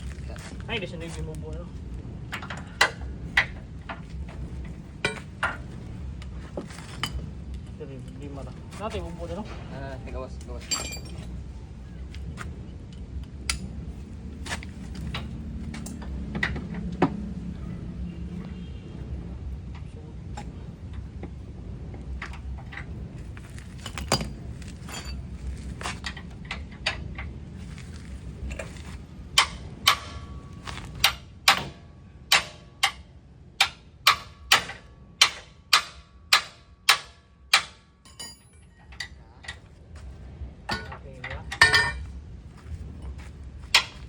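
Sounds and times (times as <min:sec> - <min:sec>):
hammer striking metal: 0:29.4 - 0:38.7.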